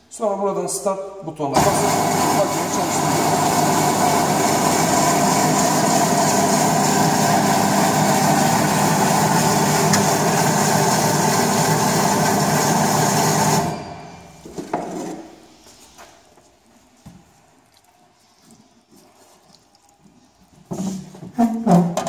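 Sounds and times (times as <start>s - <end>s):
dicing machine humming: 1.6s - 14.4s.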